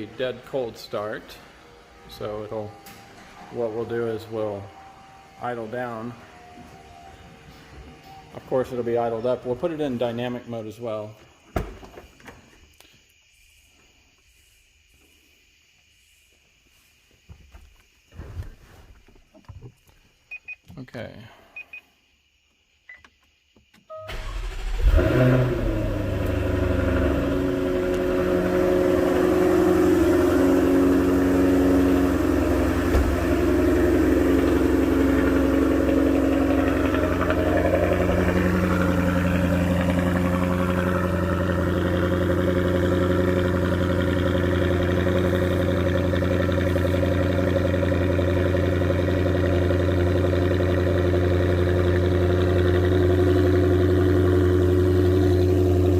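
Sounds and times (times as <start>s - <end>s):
car engine starting and idling: 0.0s - 10.5s, 23.6s - 55.9s.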